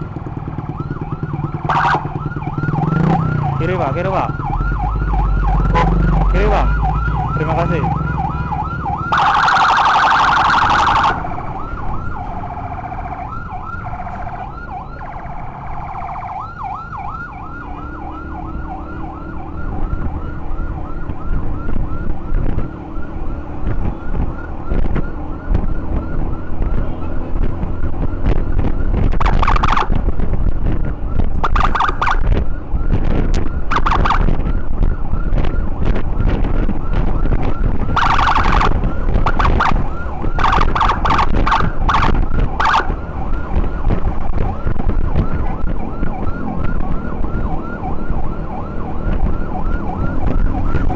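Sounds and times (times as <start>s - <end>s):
siren yelping: 0.5s - 50.9s
blaring horn blasts: 5.6s - 6.2s
wind rush: 27.6s - 50.9s.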